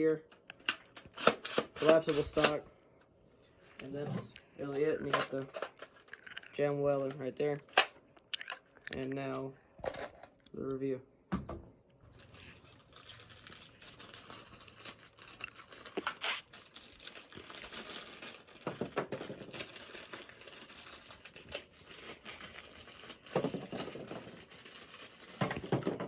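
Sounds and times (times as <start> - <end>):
plastic packaging crinkling: 12.1 - 25.9.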